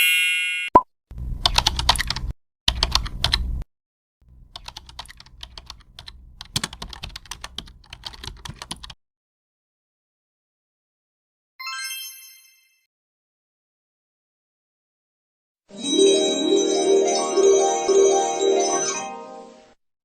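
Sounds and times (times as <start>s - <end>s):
keyboard typing: 1.4s - 3.5s, 4.3s - 9.0s.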